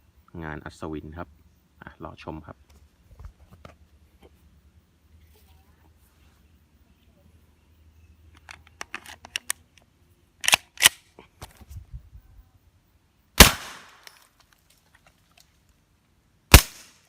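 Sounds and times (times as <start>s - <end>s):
pistol handling clicks: 10.4s - 11.1s
suppressed pistol shot: 13.4s - 14.1s, 16.5s - 17.0s.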